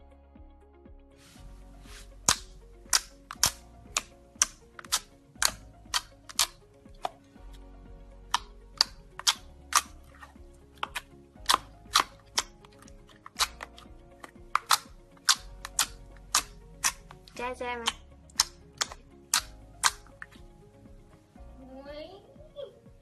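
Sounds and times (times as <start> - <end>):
background music with held tones: 0.0 - 23.0
slime popping clicks: 2.3 - 7.2, 8.3 - 10.0, 10.8 - 17.1, 17.8 - 20.4.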